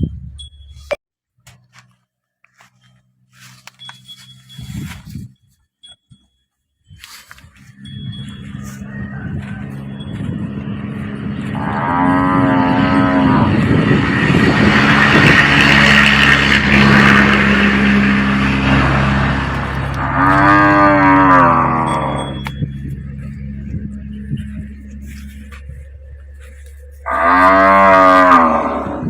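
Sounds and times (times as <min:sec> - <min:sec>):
low hum: 0:07.4 - 0:29.0
cow bellowing: 0:07.7 - 0:29.0
cattle mooing: 0:07.8 - 0:29.0.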